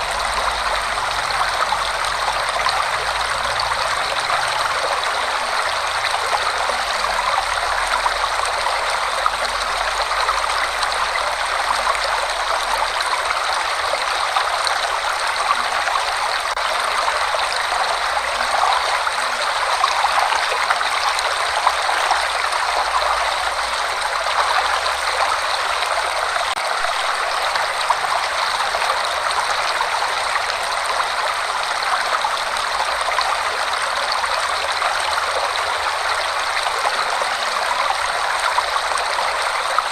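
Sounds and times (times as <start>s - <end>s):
waterfall rushing: 0.0s - 10.8s, 11.5s - 29.7s.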